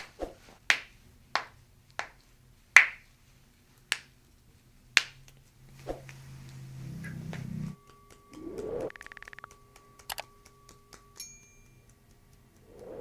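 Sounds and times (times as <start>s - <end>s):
faint low hum: 1.1s - 13.0s
sharp clicks: 8.3s - 11.0s.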